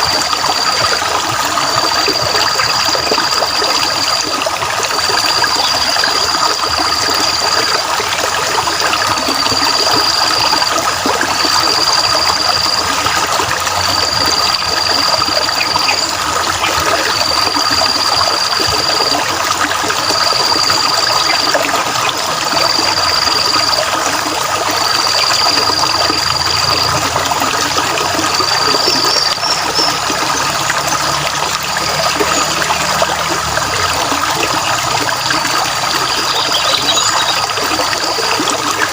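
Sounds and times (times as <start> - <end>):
water trickling: 0.0 - 38.9.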